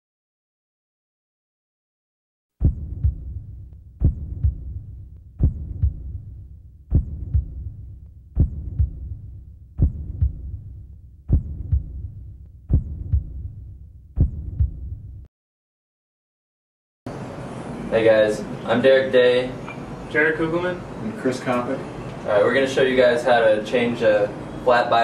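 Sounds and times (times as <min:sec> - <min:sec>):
deep heartbeat thumping: 0:02.6 - 0:15.3.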